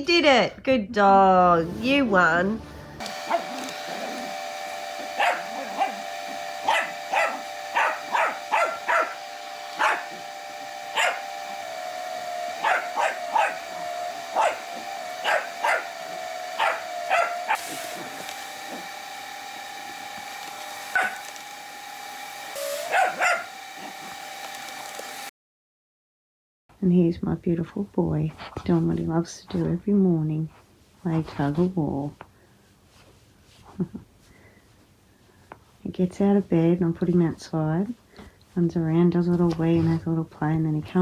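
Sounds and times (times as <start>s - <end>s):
vacuum cleaner motor whining: 1.5s - 25.3s
puppy barking: 3.2s - 4.3s, 5.0s - 10.2s, 10.9s - 11.3s, 12.6s - 16.0s, 16.6s - 17.8s, 20.9s - 21.4s, 22.8s - 24.0s.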